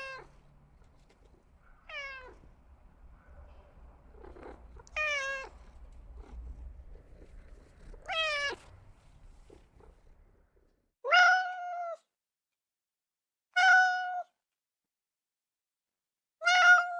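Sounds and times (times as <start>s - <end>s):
cat meowing: 0.0s - 0.4s, 1.7s - 2.5s, 4.1s - 6.4s, 7.2s - 8.8s, 11.0s - 12.1s, 13.5s - 14.4s, 16.4s - 16.9s.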